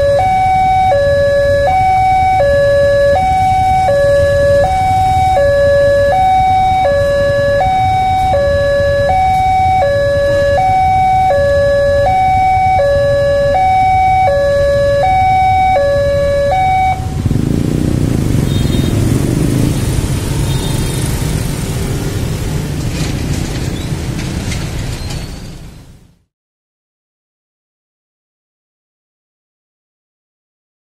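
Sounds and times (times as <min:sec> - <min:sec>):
two-tone warning siren: 0:00.0 - 0:17.6, 0:18.2 - 0:21.3.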